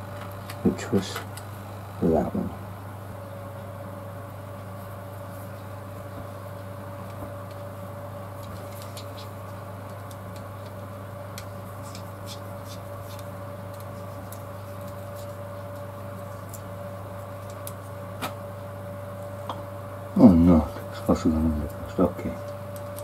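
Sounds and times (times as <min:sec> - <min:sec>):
steady hum: 0:00.0 - 0:23.0.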